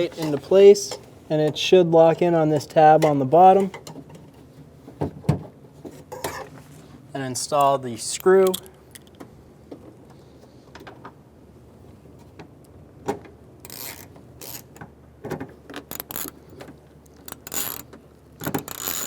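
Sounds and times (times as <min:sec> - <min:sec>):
hand tool clicking and scraping: 0:07.6 - 0:09.1, 0:13.7 - 0:14.8, 0:15.8 - 0:19.0.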